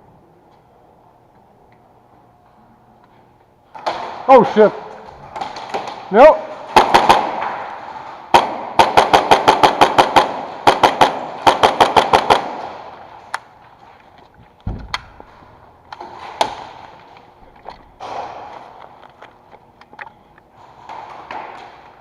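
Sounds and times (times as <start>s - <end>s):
airsoft gun shots: 6.6s - 13.0s.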